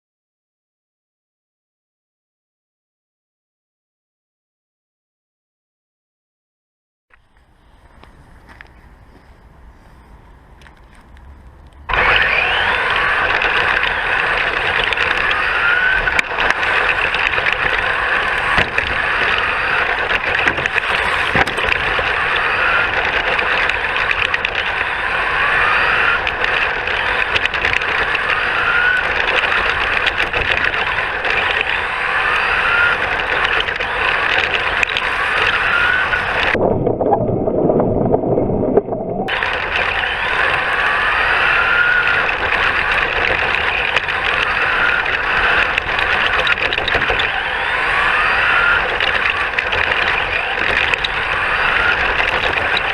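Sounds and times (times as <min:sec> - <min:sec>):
rc car motor whine with rattling: 0:11.9 - 0:36.6, 0:39.3 - 0:52.9
low rumble: 0:36.3 - 0:39.4.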